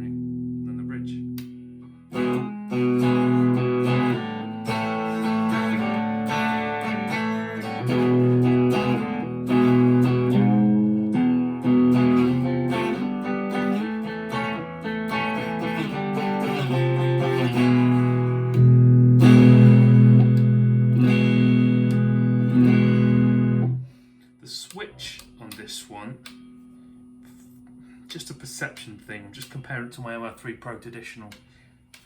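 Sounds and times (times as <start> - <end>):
clean electric guitar chords: 0.0 - 23.9.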